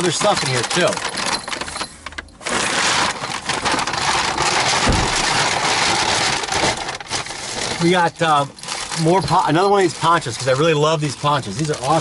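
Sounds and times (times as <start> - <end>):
shopping bag rustling: 0.0 - 12.0
dull thump: 4.8 - 5.6.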